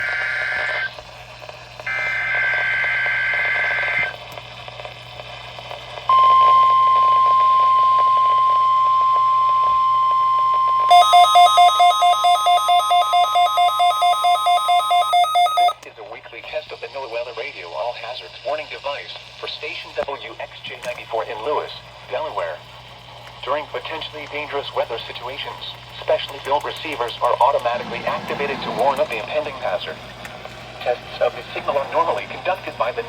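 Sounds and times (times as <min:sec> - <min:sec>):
screechy data bursts: 0:00.0 - 0:01.0, 0:01.8 - 0:04.1, 0:10.9 - 0:15.8
alarm beeping in two pitches: 0:06.1 - 0:15.8.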